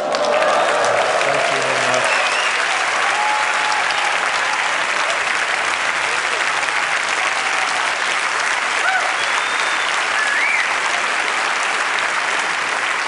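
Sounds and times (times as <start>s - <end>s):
audience applauding: 0.0s - 13.0s.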